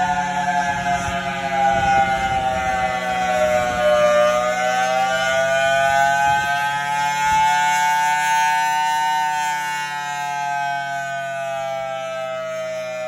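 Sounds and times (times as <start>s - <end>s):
tornado siren wailing: 0.0s - 13.0s.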